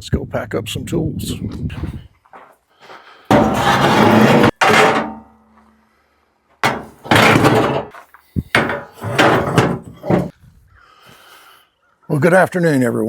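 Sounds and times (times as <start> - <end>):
tools clanging and clattering: 3.3 - 5.5, 6.6 - 10.3.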